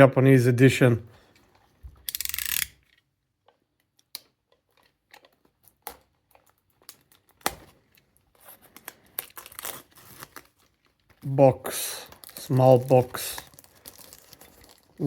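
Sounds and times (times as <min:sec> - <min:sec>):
cardboard and plastic crinkling: 0:04.6 - 0:15.0.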